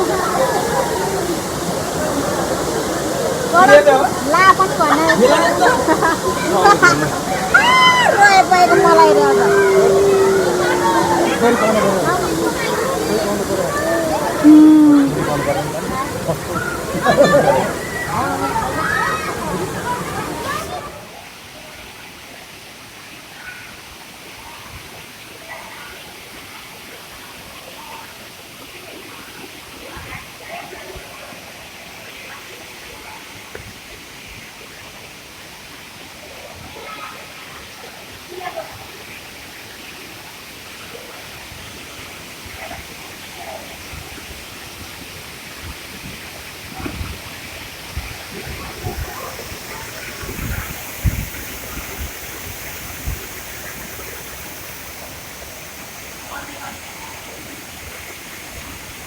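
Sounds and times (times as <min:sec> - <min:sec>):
faint voices: 0:00.0 - 0:21.2, 0:46.7 - 0:59.0
waterfall rushing: 0:00.0 - 0:21.2, 0:47.5 - 0:59.0.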